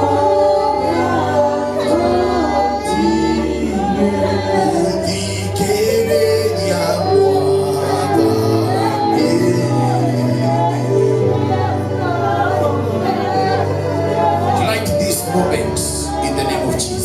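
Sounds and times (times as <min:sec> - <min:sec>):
woman singing gospel: 0:00.0 - 0:16.5.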